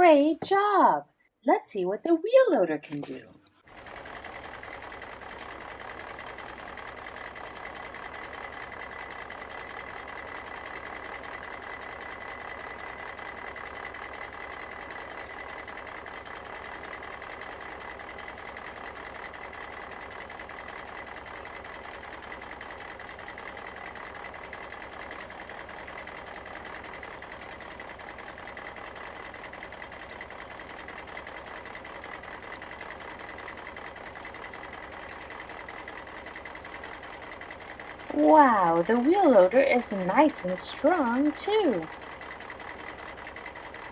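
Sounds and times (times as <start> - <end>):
heavy machinery engine whine: 2.9 - 43.9.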